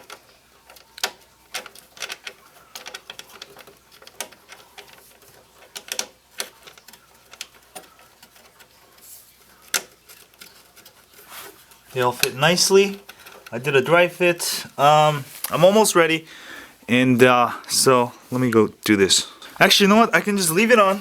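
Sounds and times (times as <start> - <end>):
hardware clicking and tapping: 0.0 - 14.8.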